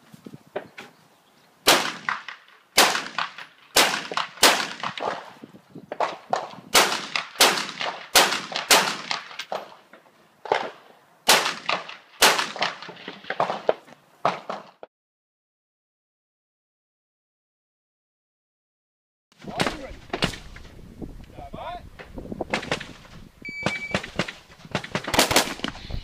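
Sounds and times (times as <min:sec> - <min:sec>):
rifle shots with echoes: 0:01.7 - 0:05.4, 0:06.7 - 0:09.4, 0:10.5 - 0:13.6, 0:23.7 - 0:25.7.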